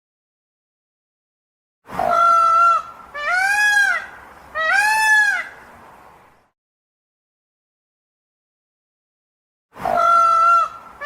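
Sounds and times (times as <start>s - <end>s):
large bird calling: 9.8s - 11.0s.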